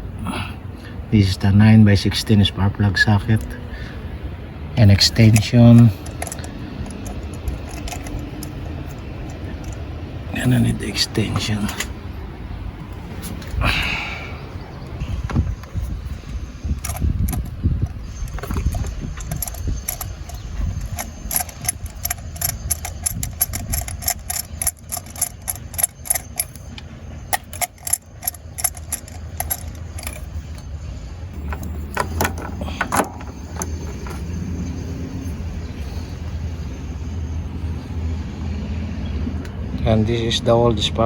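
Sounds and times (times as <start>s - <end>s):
ratchet wrench clicking: 5.0s - 9.9s, 16.7s - 30.7s.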